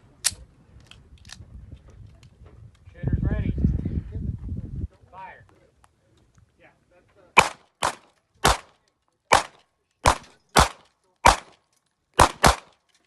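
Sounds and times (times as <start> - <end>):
pistol shots: 7.4 - 11.6, 12.2 - 12.8.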